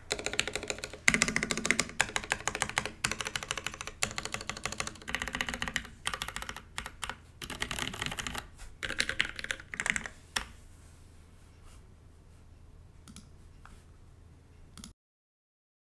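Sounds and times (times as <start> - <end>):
mechanical keyboard typing: 0.0 - 10.5.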